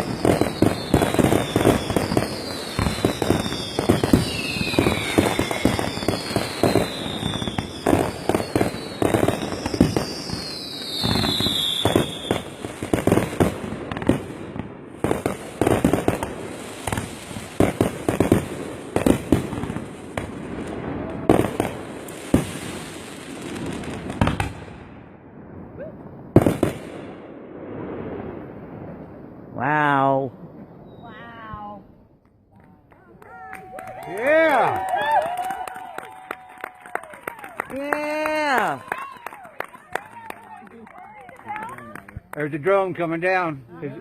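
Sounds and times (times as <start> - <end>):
falling firework whistles: 0.0 - 12.6, 30.6 - 31.4
fireworks bangs and crackles: 0.0 - 44.0.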